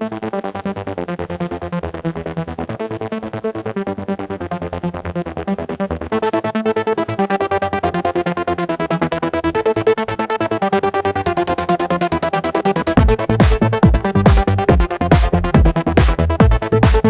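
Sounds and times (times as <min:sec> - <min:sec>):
synthesizer pulsing pattern: 0:00.9 - 0:17.0
electronic beat: 0:11.3 - 0:17.0.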